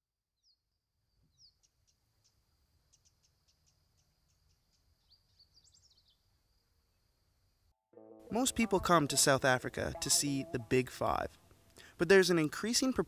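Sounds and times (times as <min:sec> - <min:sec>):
bird ticking calls: 0:01.3 - 0:06.2.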